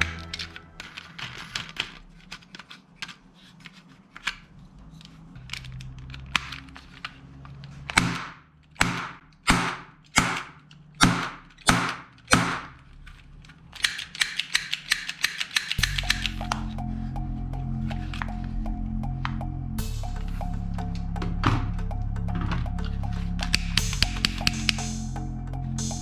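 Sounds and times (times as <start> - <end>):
toy gun shots popping: 8.0 - 12.8
toy gun clicks: 13.7 - 16.3.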